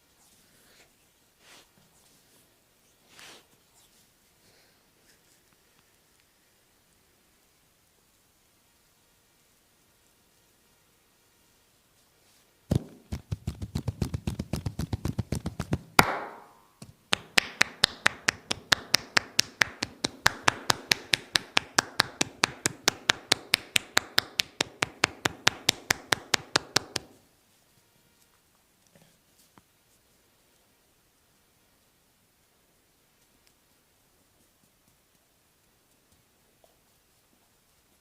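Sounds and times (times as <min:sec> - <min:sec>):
hands slapping a back: 0:12.7 - 0:27.2.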